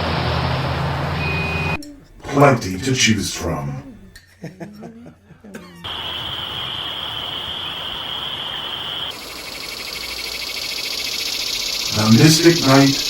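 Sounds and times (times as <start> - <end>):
faint voices: 1.8 - 4.2, 11.9 - 13.0
high steady whine: 5.9 - 13.0
pulsing hiss: 5.9 - 13.0.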